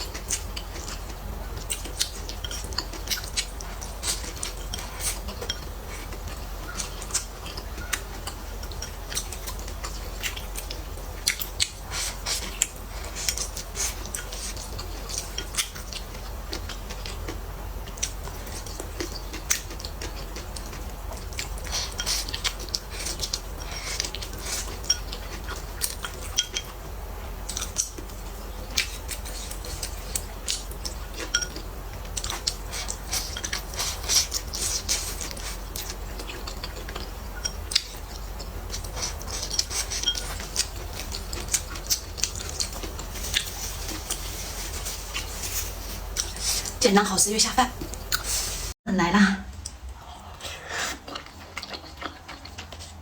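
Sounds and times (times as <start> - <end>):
chewing: 0.0 - 46.8, 49.6 - 53.0
utensils clicking against bowls: 28.7 - 31.6.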